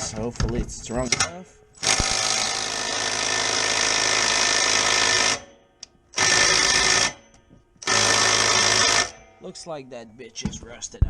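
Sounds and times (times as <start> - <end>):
impact wrench hammering: 1.8 - 9.4.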